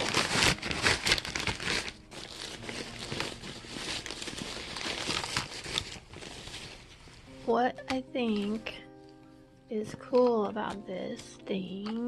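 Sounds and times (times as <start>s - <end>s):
packaging crinkling and rustling: 0.0s - 8.6s.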